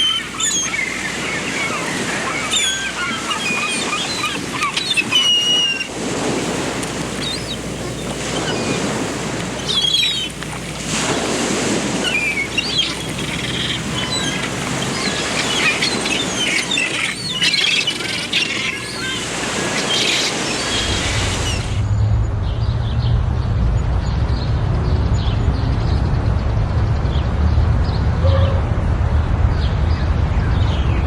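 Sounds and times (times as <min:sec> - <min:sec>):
songbirds chirping: 0:00.0 - 0:21.8.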